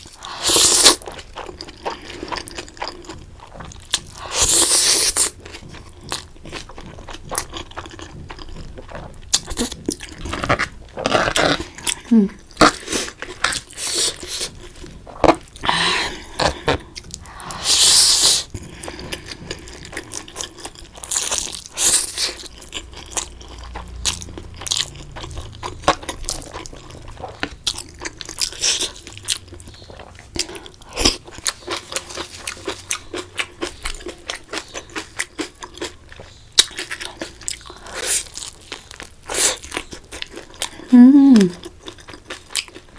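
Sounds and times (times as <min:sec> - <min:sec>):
crunching and chewing: 0:00.0 - 0:40.9, 0:41.5 - 0:42.9.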